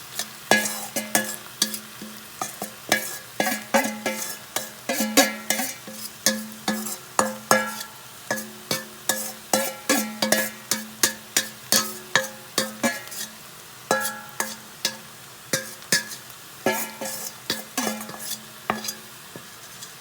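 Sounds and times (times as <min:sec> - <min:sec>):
meat sizzling: 0:00.0 - 0:20.0
spatula knocking on cooking pot: 0:04.9 - 0:13.1, 0:13.9 - 0:16.1.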